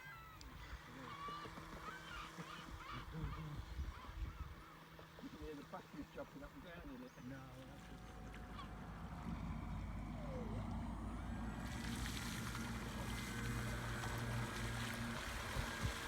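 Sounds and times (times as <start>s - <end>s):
electric motor hum: 0.0s - 16.0s
water rushing from hull: 7.6s - 16.0s.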